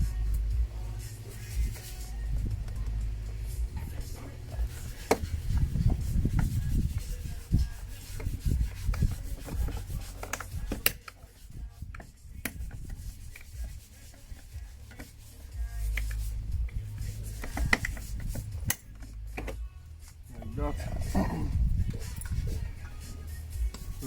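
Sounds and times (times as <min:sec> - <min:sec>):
car door trim scraping: 0:03.8 - 0:11.2, 0:17.1 - 0:19.6.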